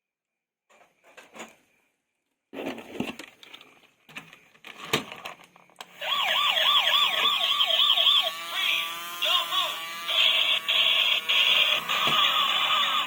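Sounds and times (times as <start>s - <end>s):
toy siren yelping: 6.0s - 13.0s.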